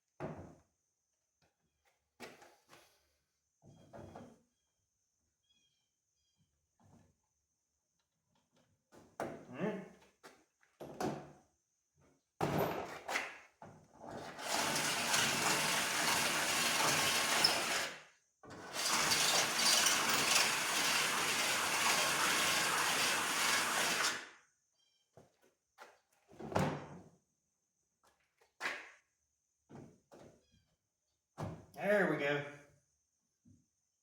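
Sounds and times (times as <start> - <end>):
power drill drilling sheet metal: 14.3 - 18.0, 18.6 - 24.3.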